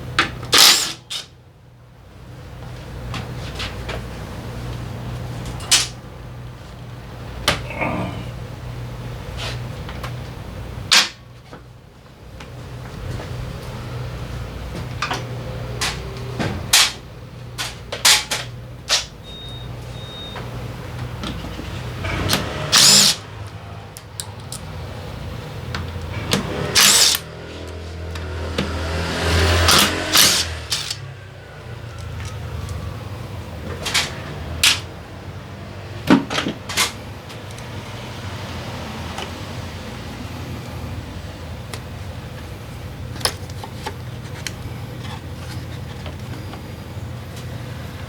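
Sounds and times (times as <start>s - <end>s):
metal tools clicking and clanking: 0.3s - 1.3s, 21.3s - 23.2s, 25.8s - 27.8s, 29.6s - 31.1s
power tool bursts: 22.0s - 23.3s, 26.1s - 27.3s, 29.1s - 31.1s.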